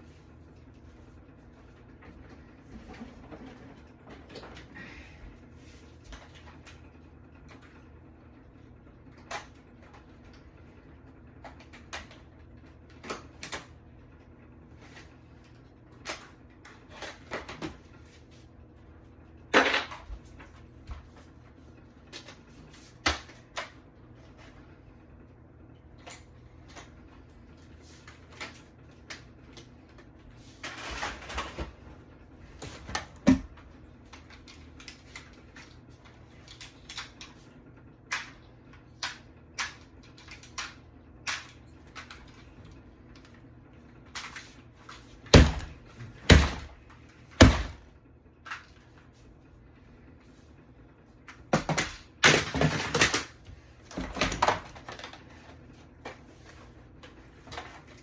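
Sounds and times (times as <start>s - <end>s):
objects clicking and clattering: 51.3s - 58.0s.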